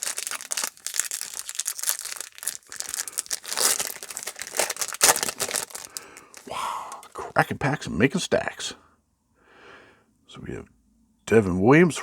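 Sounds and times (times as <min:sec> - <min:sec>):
wrapper crinkling and tearing: 0:00.0 - 0:06.5.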